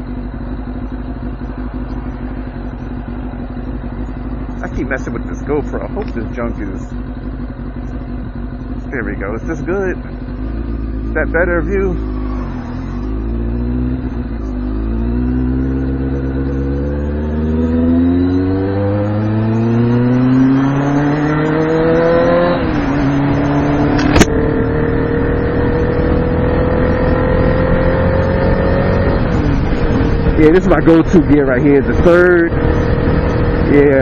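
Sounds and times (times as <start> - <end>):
motorcycle engine accelerating: 0.0 - 34.0
sharp click: 23.9 - 24.4.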